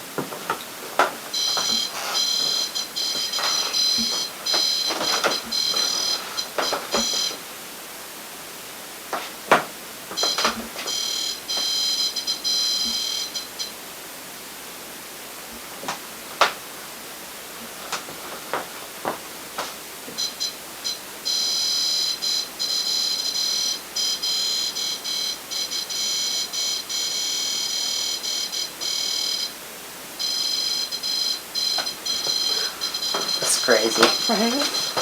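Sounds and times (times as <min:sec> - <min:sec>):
electronic alarm high tone: 0:01.3 - 0:07.4, 0:10.2 - 0:13.8, 0:20.2 - 0:29.5, 0:30.2 - 0:35.0.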